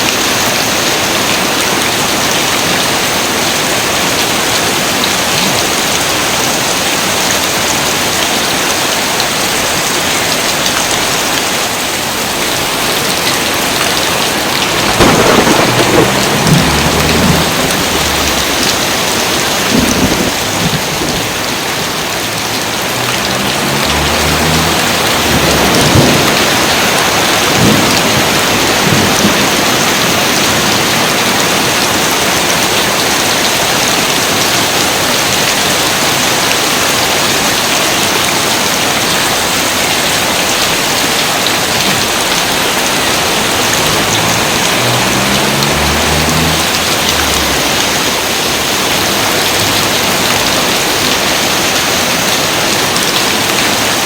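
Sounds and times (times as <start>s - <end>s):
heavy rain: 0.0s - 54.0s
thunder cracks and rumbles: 13.6s - 31.4s, 43.1s - 50.8s.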